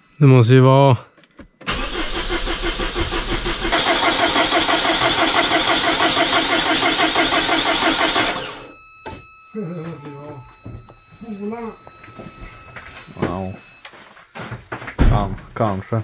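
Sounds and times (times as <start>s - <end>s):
car engine cranking on starter: 1.6s - 8.7s.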